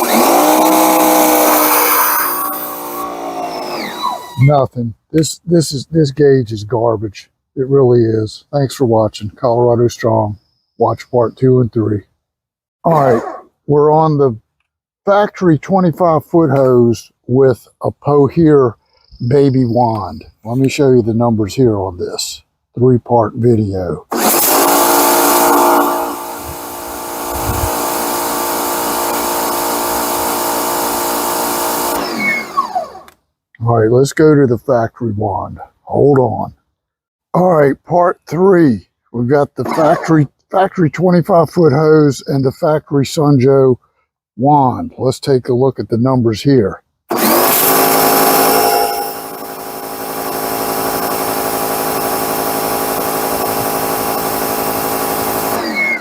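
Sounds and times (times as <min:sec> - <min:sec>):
pressure washer motor hum: 0:00.0 - 0:04.4, 0:24.1 - 0:33.1, 0:47.1 - 0:56.0.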